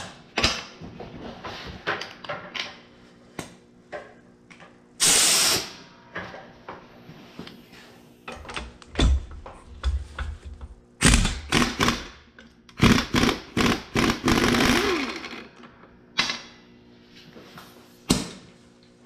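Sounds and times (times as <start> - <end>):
loud hiss: 5.0 - 5.8.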